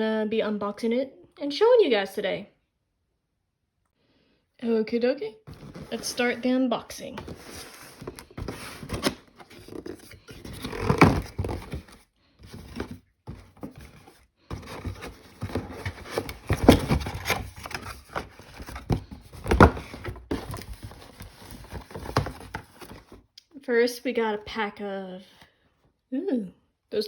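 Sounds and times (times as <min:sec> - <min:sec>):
cardboard scraping and rustling: 0:05.5 - 0:23.2.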